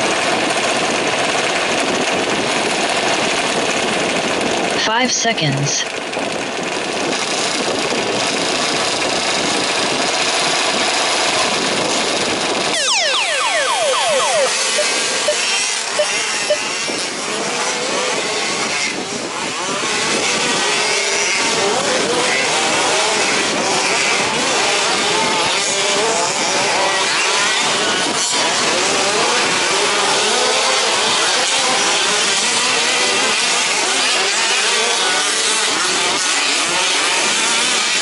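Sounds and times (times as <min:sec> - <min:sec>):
sharply falling whine: 0:12.7 - 0:16.6
rc truck engines buzzing: 0:14.5 - 0:38.0.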